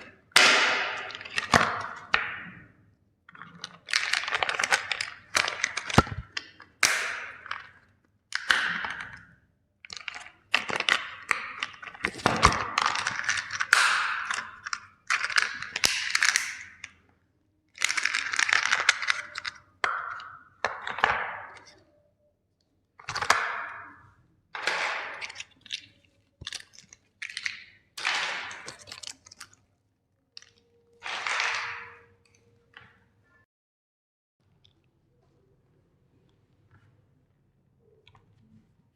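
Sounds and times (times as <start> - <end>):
plastic toys cracking and crunching: 0.0 - 17.1, 17.7 - 21.8, 23.0 - 29.7, 30.3 - 33.0.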